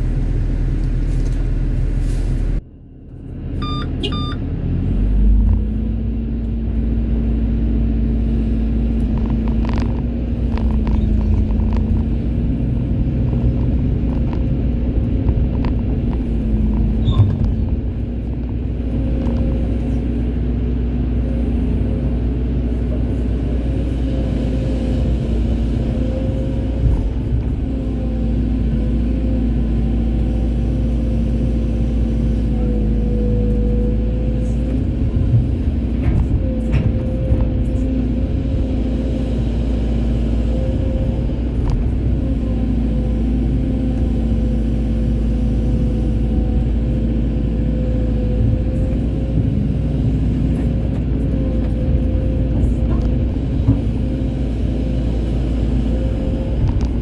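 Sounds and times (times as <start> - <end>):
excavator diesel engine running: 0.0 - 57.0
short beeps: 3.6 - 4.4.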